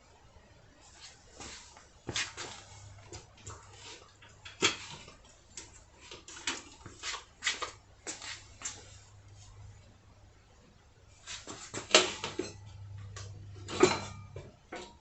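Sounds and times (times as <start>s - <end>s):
low steady hum: 7.8s - 15.0s.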